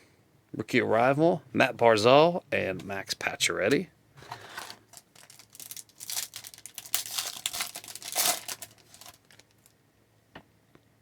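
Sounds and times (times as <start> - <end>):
plastic wrapper tearing and crinkling: 4.3 - 9.7.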